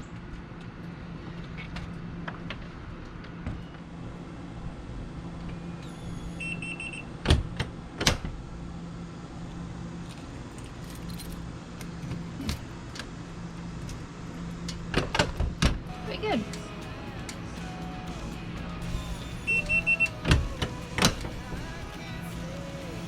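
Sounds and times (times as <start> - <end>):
electronic lock beeps: 5.8 - 7.1, 19.4 - 20.4.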